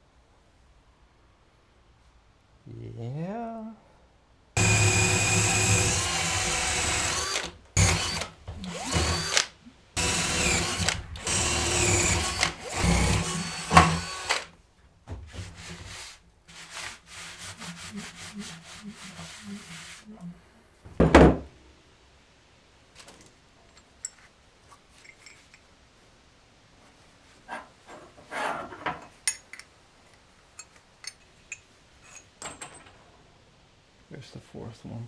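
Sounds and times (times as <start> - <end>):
electric drill whining: 4.6 - 14.5.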